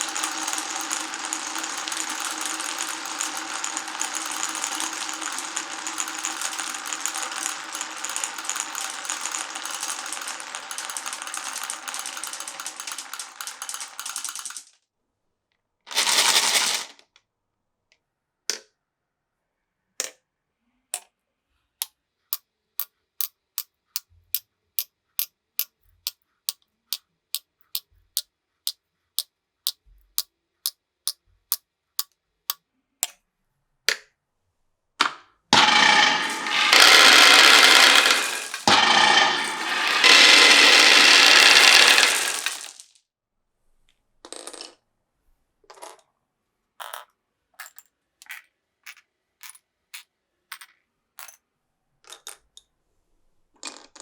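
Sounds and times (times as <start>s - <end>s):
glass marbles rolling clatter: 0.0s - 14.7s, 15.9s - 17.0s, 35.6s - 43.0s
marbles clicking: 0.0s - 14.7s, 15.9s - 16.9s, 35.6s - 42.9s.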